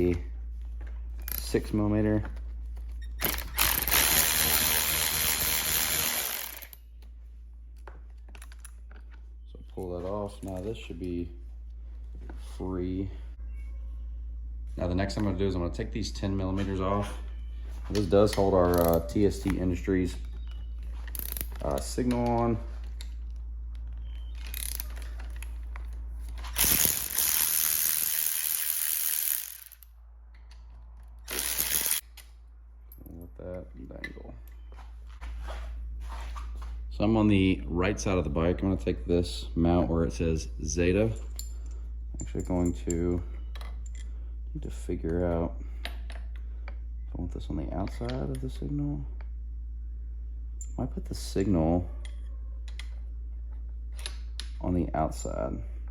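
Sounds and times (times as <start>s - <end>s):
power tool running: 3.2s - 6.8s, 26.6s - 29.8s, 31.3s - 32.0s
ratchet clicking: 3.2s - 6.8s, 18.7s - 19.1s, 21.1s - 21.5s, 24.5s - 25.0s, 26.6s - 29.9s, 31.3s - 32.3s
light clicks of parts: 17.8s - 26.9s, 29.8s - 31.3s, 41.0s - 44.2s, 47.6s - 49.4s, 52.0s - 54.7s.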